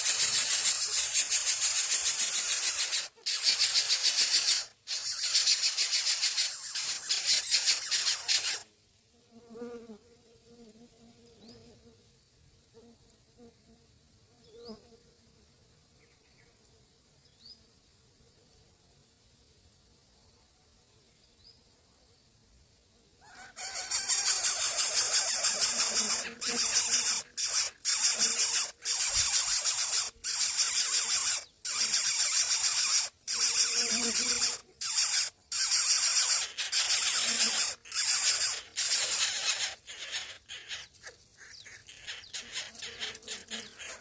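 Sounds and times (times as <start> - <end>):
nestlings begging calls: 0.0 - 8.6, 23.6 - 44.0.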